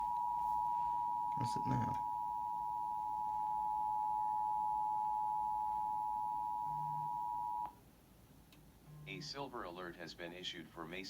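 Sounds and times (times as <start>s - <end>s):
two-tone alarm signal: 0.0s - 7.7s.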